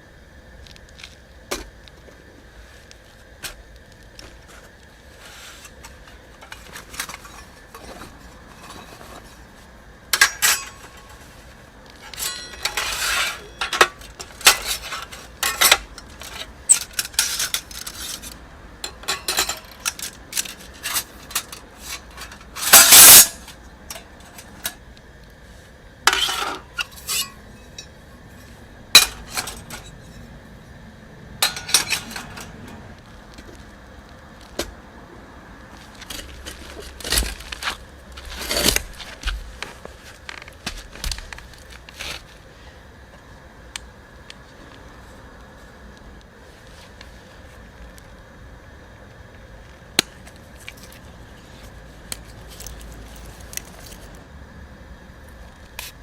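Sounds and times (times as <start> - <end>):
metal camp gear clinking: 10.2 - 11.3, 12.0 - 24.7, 31.4 - 32.6, 50.6 - 51.2, 52.1 - 54.2.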